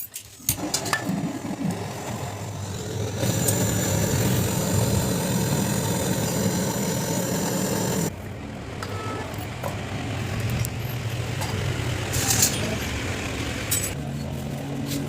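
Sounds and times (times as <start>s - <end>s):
motor-driven machine running: 0.6s - 8.1s.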